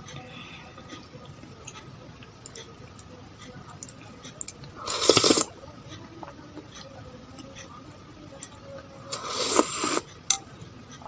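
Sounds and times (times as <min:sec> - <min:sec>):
close-miked eating sounds: 0:00.0 - 0:11.0.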